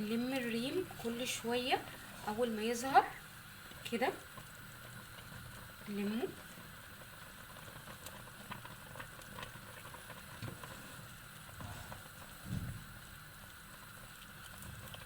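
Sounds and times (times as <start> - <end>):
jam bubbling in a pot: 0.0 - 15.0
soft low thump: 12.4 - 12.9.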